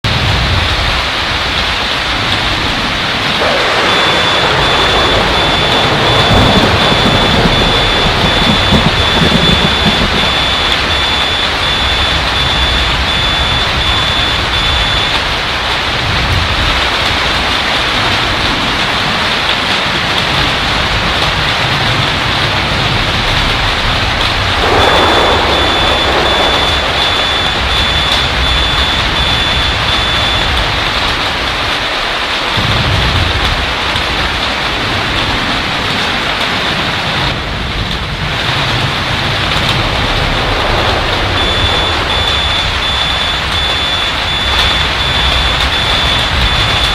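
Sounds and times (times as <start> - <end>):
hail drumming on a roof: 0.0 - 46.9
thunder: 0.0 - 46.9
electronic alarm beeping: 3.4 - 15.3, 24.6 - 30.6, 40.7 - 46.9.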